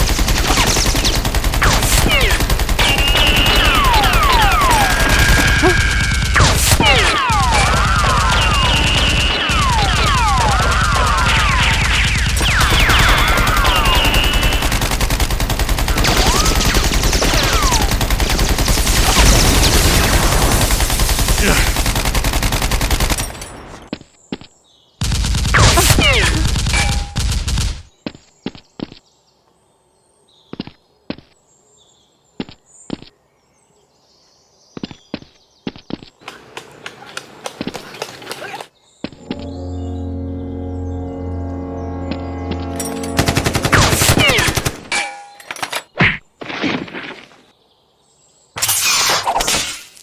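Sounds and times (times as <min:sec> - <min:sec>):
rapid automatic gunfire: 0:00.0 - 0:23.9, 0:43.1 - 0:44.9
high swooping tones: 0:39.2 - 0:44.9.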